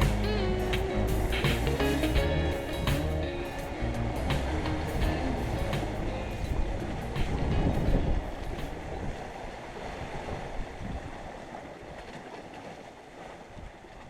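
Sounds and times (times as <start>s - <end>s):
wind on microphone: 0.0s - 11.5s
sea waves: 0.0s - 14.0s.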